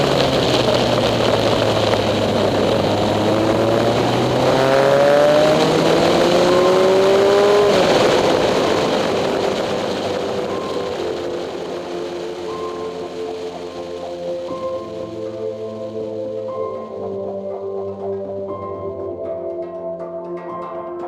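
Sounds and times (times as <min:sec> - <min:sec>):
motorcycle engine accelerating: 0:00.0 - 0:16.0
wind and road noise: 0:00.0 - 0:18.6.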